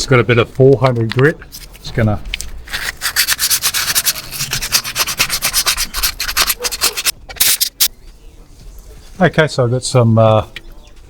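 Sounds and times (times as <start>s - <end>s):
sandpaper rubbing on metal: 2.7s - 7.9s.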